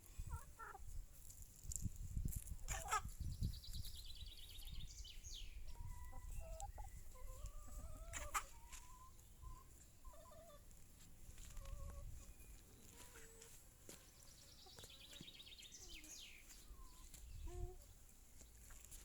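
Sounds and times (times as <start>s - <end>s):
chickens clucking softly: 0.0s - 1.0s, 2.6s - 3.9s, 5.6s - 13.6s, 14.6s - 19.0s.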